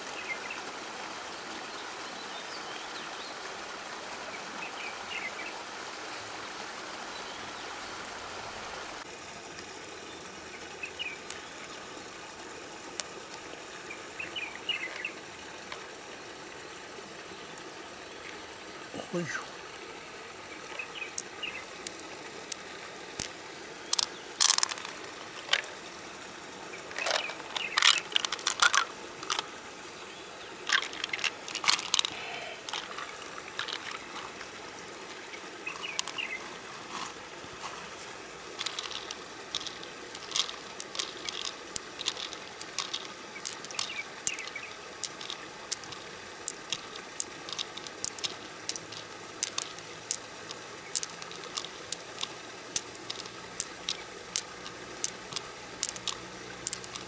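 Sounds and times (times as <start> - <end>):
steady outdoor hiss: 0.0 - 57.0
shells clicking and scraping: 11.2 - 11.4, 12.9 - 13.4, 14.8 - 15.9, 20.7 - 26.0, 26.8 - 29.7, 30.6 - 57.0.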